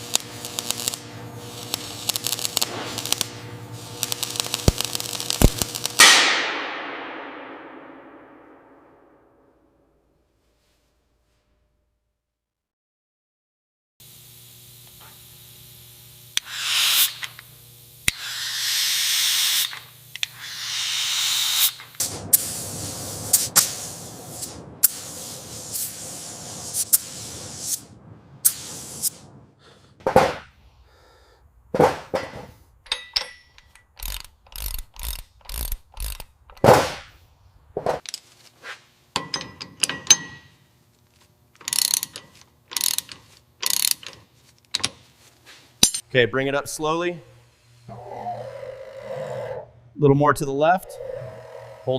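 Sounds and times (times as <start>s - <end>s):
hissing bursts: 0.0s - 6.5s, 16.4s - 17.4s, 18.1s - 31.7s
metallic clicks and clanks: 32.2s - 36.7s, 39.2s - 40.5s, 41.6s - 45.0s.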